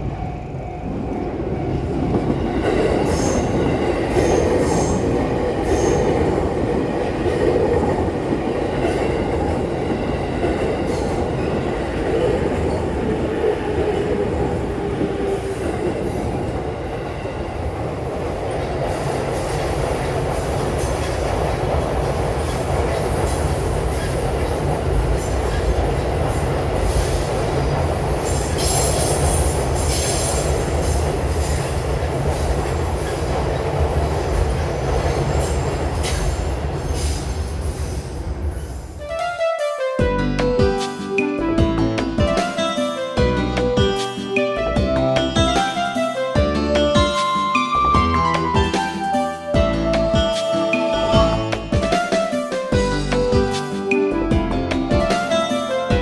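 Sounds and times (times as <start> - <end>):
train wheels rumbling on rail: 0.0 - 39.1.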